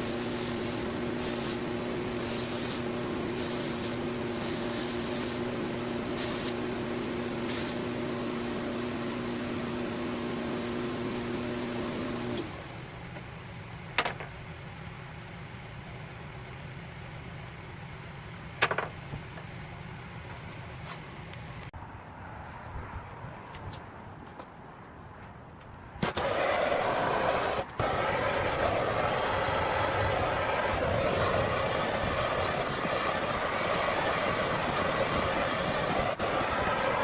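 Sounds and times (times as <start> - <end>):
steel hissing on grinding wheel: 0.0 - 6.7, 7.4 - 7.8
bench grinder humming: 0.0 - 12.4.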